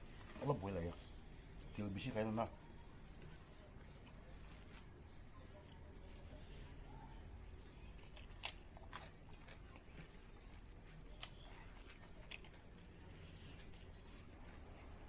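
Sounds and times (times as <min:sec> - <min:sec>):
person chewing: 0:08.0 - 0:15.0.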